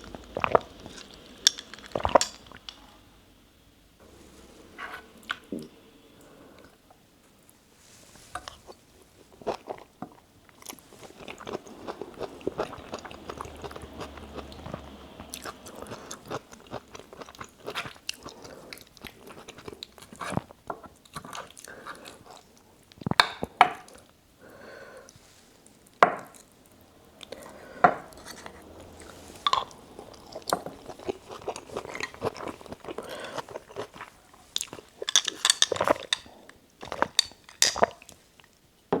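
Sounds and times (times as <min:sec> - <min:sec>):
close chewing mouth sounds: 0:08.5 - 0:23.2, 0:26.3 - 0:38.6.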